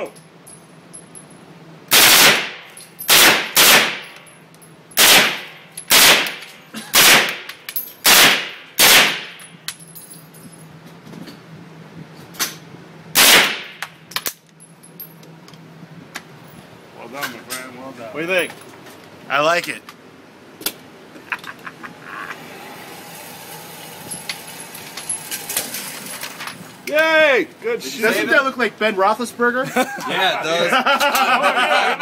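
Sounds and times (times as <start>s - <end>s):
gunshots: 1.9s - 4.2s, 5.0s - 9.4s, 13.2s - 13.8s.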